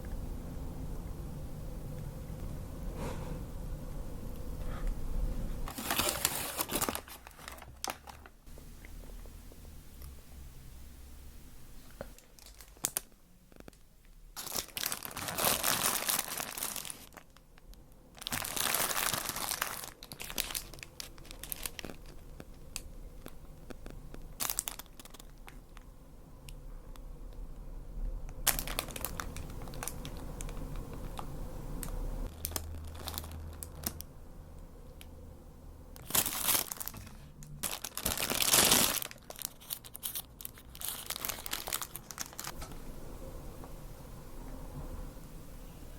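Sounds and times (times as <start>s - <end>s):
paper packaging crinkling: 5.6s - 8.4s, 11.8s - 13.8s, 14.4s - 25.8s, 28.4s - 34.1s, 36.0s - 42.7s.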